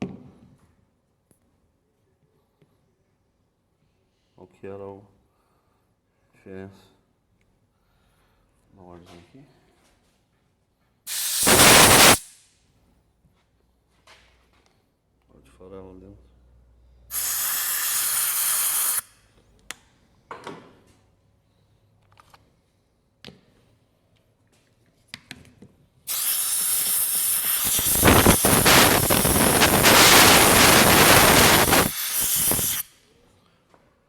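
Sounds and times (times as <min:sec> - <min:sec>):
pressurised spray hissing: 0:11.1 - 0:12.3, 0:17.1 - 0:19.0, 0:26.1 - 0:32.9.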